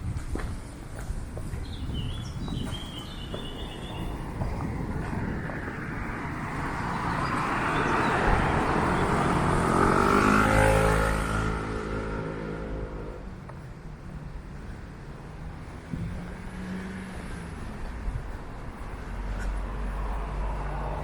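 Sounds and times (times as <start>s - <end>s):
motor vehicle passing by: 3.1s - 13.3s, 15.4s - 18.2s.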